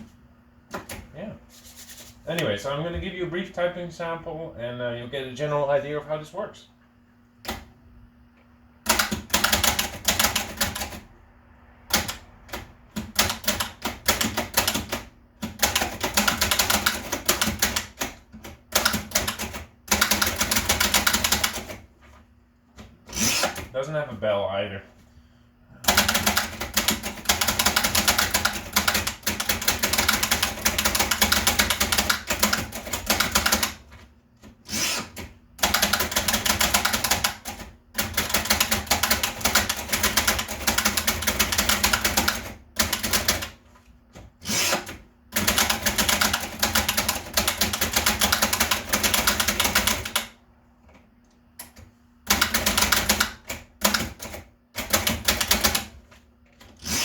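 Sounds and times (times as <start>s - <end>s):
typewriter keystroke clacks: 8.9s - 11.0s, 11.9s - 21.8s, 25.9s - 33.8s, 35.1s - 43.6s, 44.7s - 50.4s, 52.3s - 55.9s.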